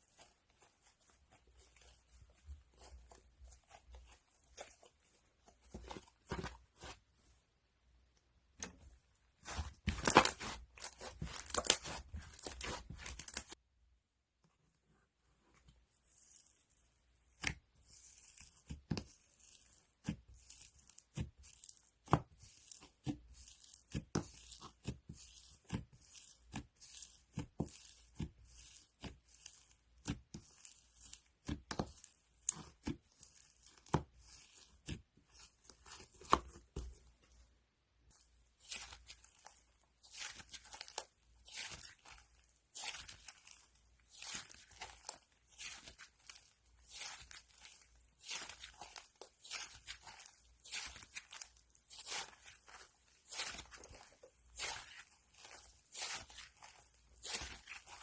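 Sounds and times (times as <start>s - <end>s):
crunchy slime popping and crackling: 9.4s - 13.6s.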